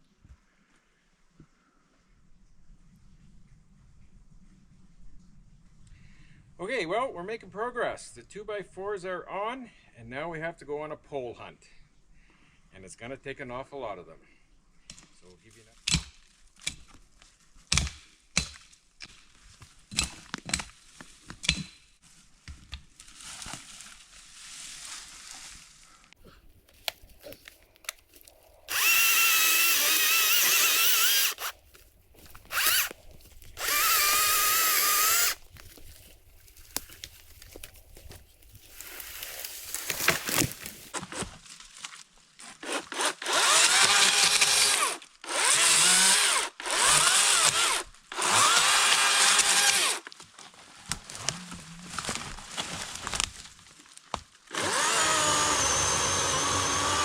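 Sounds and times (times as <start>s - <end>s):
power tool motor whine: 28.7s - 31.6s, 32.3s - 33.0s, 33.6s - 35.4s, 42.9s - 50.0s, 54.5s - 57.0s.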